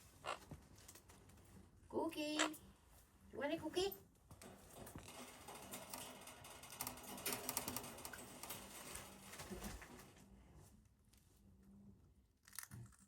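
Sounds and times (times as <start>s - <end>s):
parrot crunching cookie: 12.4s - 13.0s.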